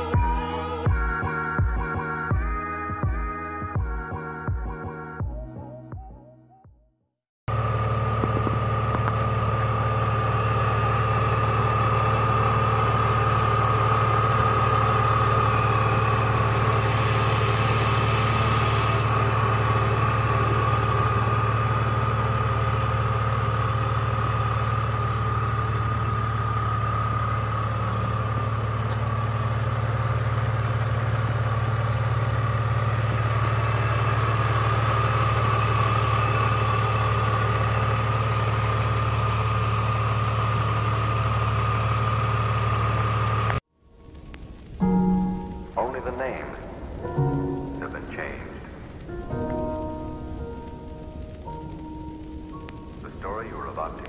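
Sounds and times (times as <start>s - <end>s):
car engine idling: 7.5s - 54.0s
steady high whine: 7.5s - 54.0s.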